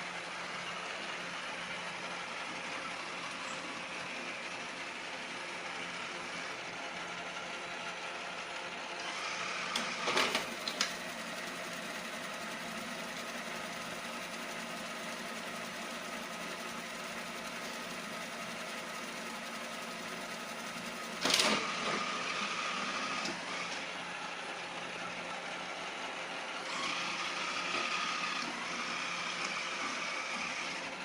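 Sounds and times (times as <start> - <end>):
robot vacuum motor hum: 0.0 - 31.0.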